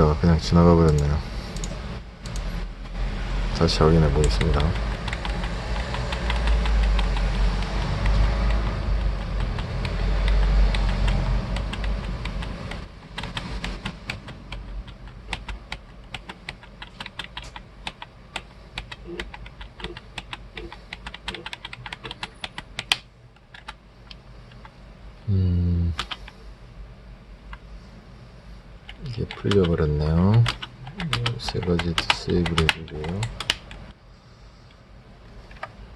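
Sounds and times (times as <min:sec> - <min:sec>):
loud low hum: 0:00.0 - 0:15.3
keyboard keys tapping: 0:04.2 - 0:13.4, 0:14.1 - 0:18.1, 0:18.8 - 0:23.8, 0:28.9 - 0:33.8.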